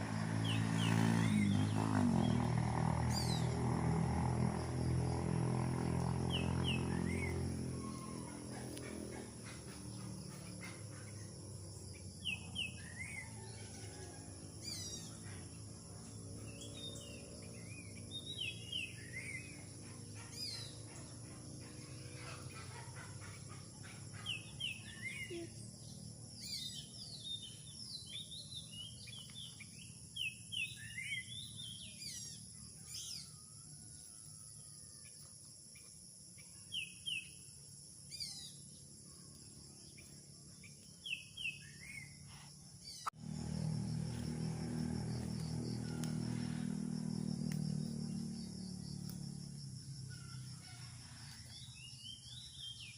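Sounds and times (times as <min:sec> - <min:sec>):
birds chirping: 0:00.0 - 0:13.5, 0:14.7 - 0:33.4
crickets droning: 0:00.0 - 0:52.9.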